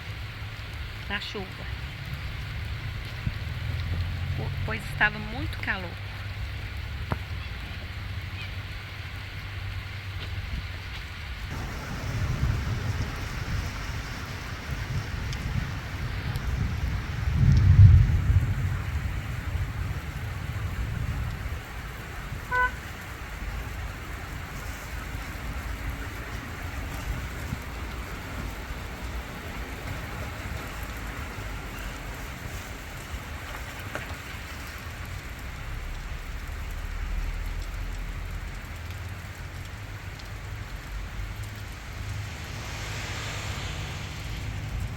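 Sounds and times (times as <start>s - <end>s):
heavy rain falling: 0.0s - 44.9s
low rumble: 11.5s - 21.8s, 40.2s - 44.9s.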